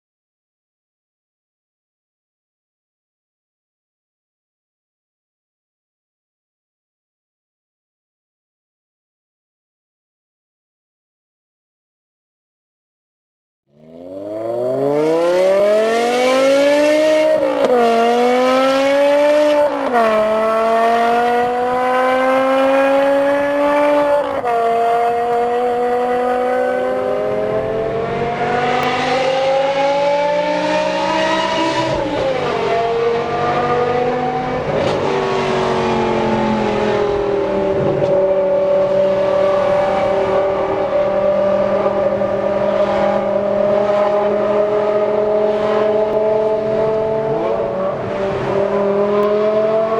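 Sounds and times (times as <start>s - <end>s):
car engine revving through gear shifts: 13.7s - 49.9s.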